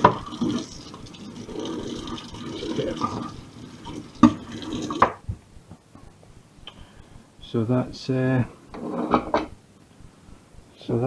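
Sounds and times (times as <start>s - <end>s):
tap running water into sink: 0.0s - 5.2s.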